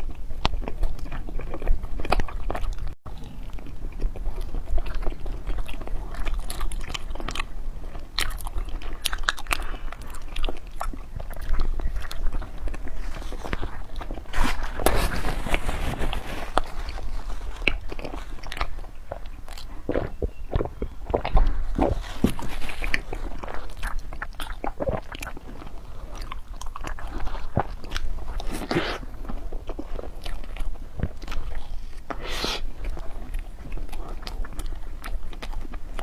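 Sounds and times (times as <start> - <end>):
crunchy dessert chewing: 0.0 - 36.0
mouth sounds: 31.0 - 34.9.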